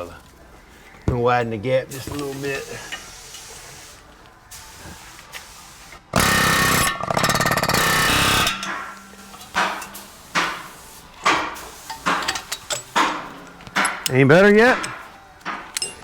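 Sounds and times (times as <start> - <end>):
pneumatic air hammer: 2.0 - 3.8, 4.5 - 16.0
metal knocks: 6.2 - 16.0.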